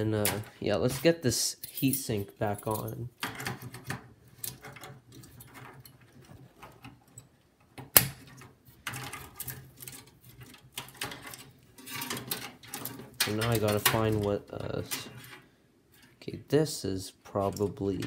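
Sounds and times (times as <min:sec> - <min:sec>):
heatsink clicks and scrapes: 0:03.2 - 0:16.2.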